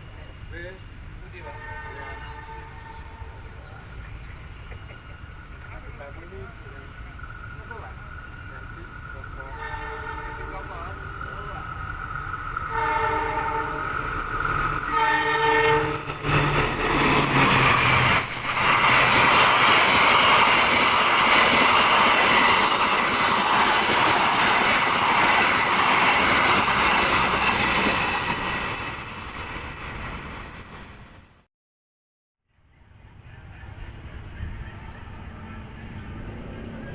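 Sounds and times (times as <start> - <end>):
locomotive horn blasts: 1.4 - 3.5, 9.5 - 10.6, 12.6 - 16.1
train wheels rumbling and clattering: 2.8 - 31.4.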